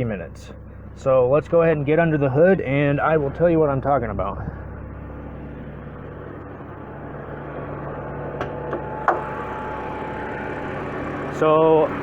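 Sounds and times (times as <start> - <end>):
car engine idling: 0.0 - 12.0
sharp clicks and knocks: 8.4 - 9.3.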